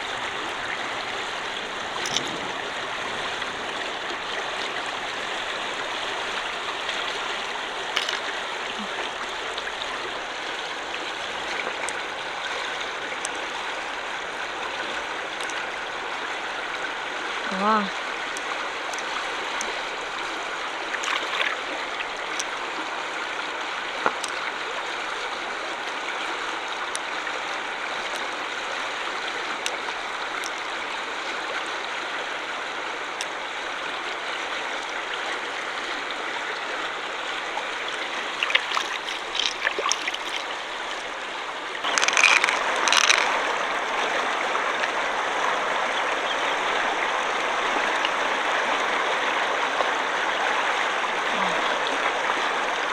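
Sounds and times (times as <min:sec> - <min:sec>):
stream water rushing: 0:00.0 - 0:52.9
faint clicks: 0:38.4 - 0:40.6, 0:41.8 - 0:43.5.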